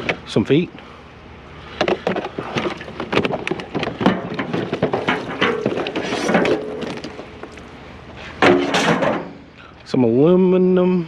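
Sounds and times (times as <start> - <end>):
scrap knocking and clattering: 1.8 - 7.6, 8.4 - 9.4.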